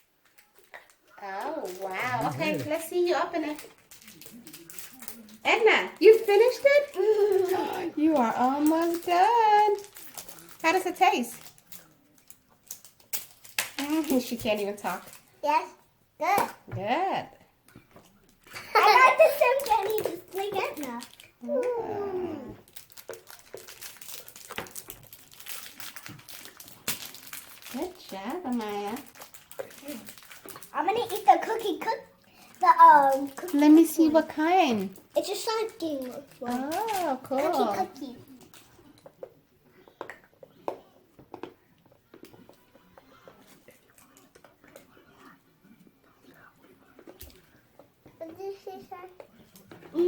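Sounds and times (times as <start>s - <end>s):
candy wrapper crinkling: 0.0s - 15.7s, 18.2s - 21.4s, 22.6s - 39.1s
small clicks and rustles: 0.2s - 15.3s, 22.6s - 40.6s.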